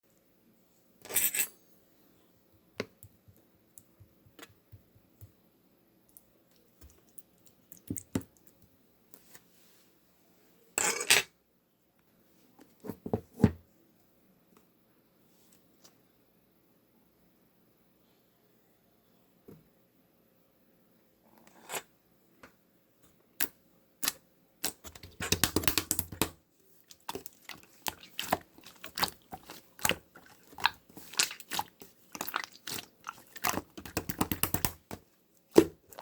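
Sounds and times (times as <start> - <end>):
crackly slime squelches: 23.4 - 36.0
slime squished by hand: 24.0 - 36.0.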